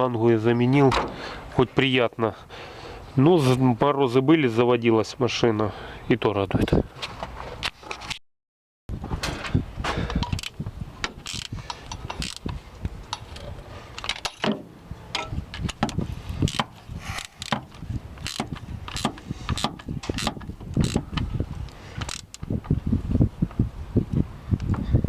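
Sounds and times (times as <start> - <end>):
ratchet wrench clicking: 11.2 - 12.5, 15.7 - 17.6, 18.2 - 21.2, 22.0 - 22.4.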